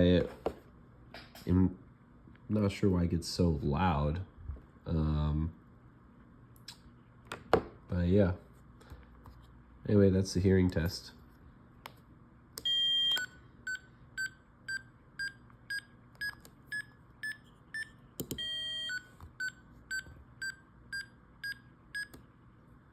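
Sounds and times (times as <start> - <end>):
long multi-tone beep: 12.7 - 14.3, 17.2 - 22.1.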